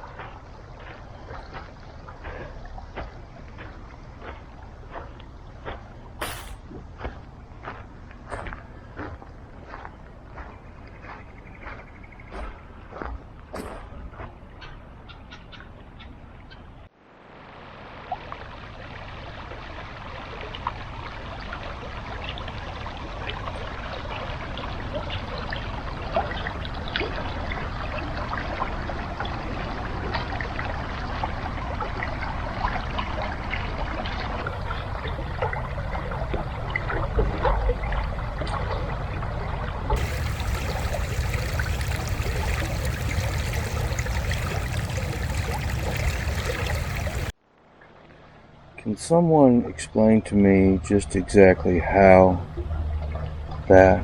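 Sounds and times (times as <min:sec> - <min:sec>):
stream water trickling: 0:17.3 - 0:38.6, 0:39.9 - 0:47.4.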